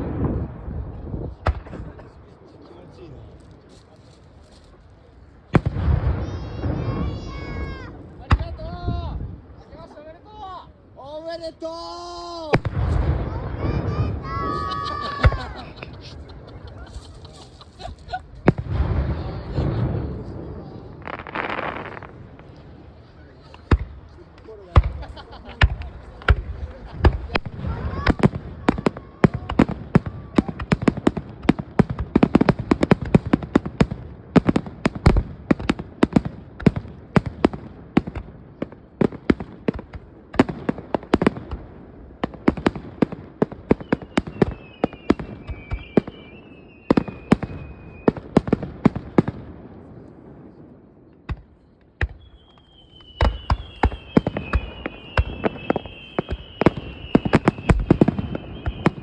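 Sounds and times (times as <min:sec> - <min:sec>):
fireworks bangs and crackles: 0:00.0 - 0:10.0, 0:11.4 - 0:59.0
fireworks whistling: 0:12.2 - 0:22.6, 0:43.6 - 0:48.5, 0:52.0 - 0:59.0.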